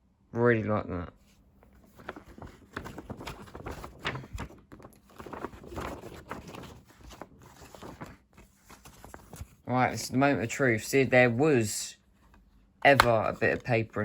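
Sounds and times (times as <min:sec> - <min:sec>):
hands handling disc packaging: 0:01.8 - 0:09.6, 0:12.3 - 0:14.0.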